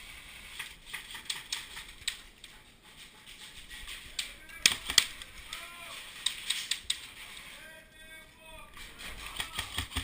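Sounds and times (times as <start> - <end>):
airsoft guns firing: 4.5 - 5.3, 9.2 - 10.0.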